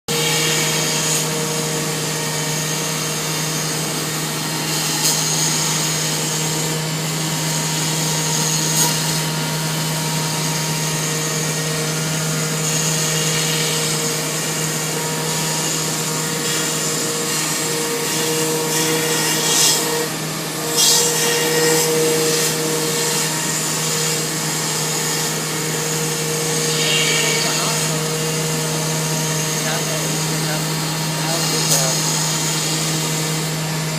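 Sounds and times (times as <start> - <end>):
cutter hissing through foam: 0.1 - 33.9
cutter scraping: 0.1 - 33.9
milling machine spindle humming: 0.1 - 33.9.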